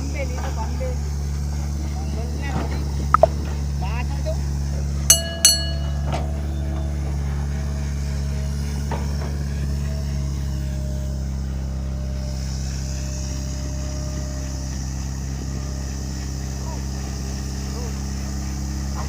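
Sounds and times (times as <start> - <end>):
excavator diesel engine running: 0.0 - 19.0
metallic knock: 5.1 - 6.4.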